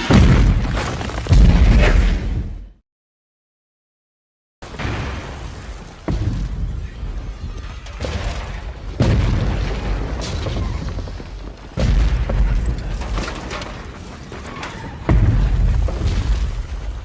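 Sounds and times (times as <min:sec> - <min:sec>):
heavy booming impacts: 0:04.6 - 0:10.9, 0:11.7 - 0:13.9, 0:15.0 - 0:17.0.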